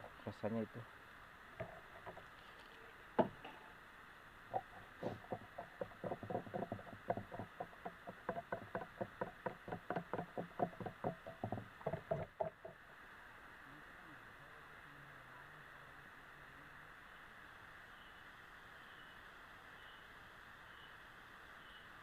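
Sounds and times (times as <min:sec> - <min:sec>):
hiss of rain: 0:12.8 - 0:22.0.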